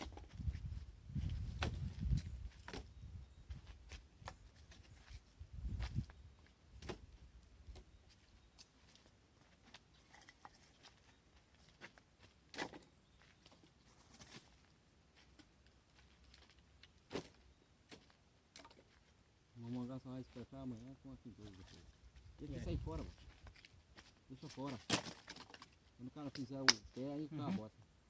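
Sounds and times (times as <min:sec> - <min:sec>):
dry sticks knocking and snapping: 0:24.9 - 0:27.0.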